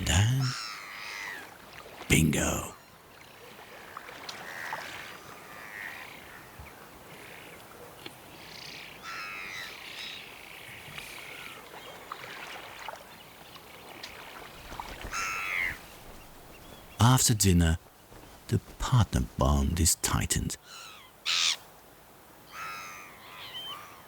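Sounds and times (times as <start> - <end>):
wild birds calling: 0.0 - 1.6, 4.4 - 12.5, 13.9 - 18.8, 20.6 - 21.7, 22.5 - 24.0.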